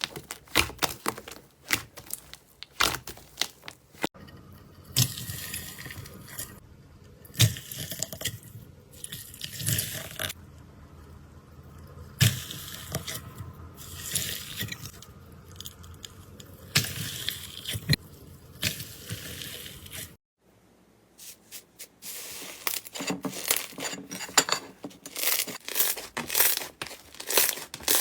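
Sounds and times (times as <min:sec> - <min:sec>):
slime squelching by hand: 0:00.0 - 0:04.1, 0:25.1 - 0:28.0.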